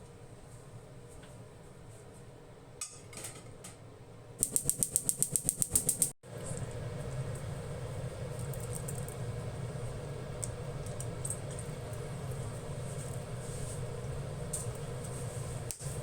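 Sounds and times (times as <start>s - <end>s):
steady low hum: 4.0s - 16.0s.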